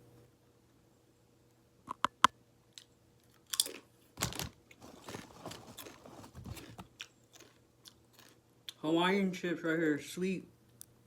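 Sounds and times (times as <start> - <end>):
crunchy chewing: 2.8 - 8.8
crunchy chip bites: 3.3 - 8.8.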